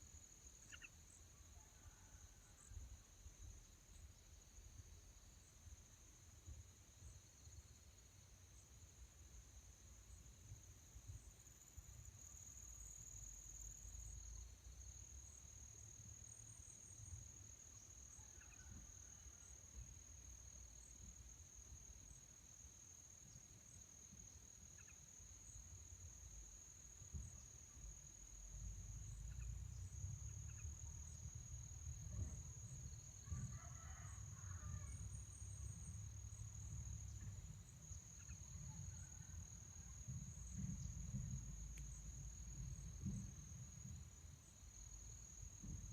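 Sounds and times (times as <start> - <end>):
faint chirps: 0.0 - 2.8.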